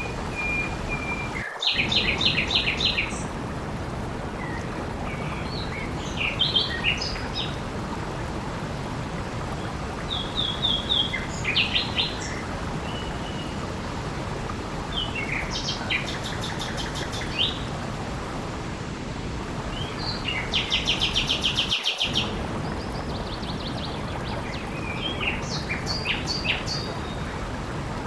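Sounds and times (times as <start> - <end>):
flowing water rushing: 0.0 - 28.0
small birds chirping: 9.6 - 13.6, 14.9 - 17.8, 19.7 - 27.4.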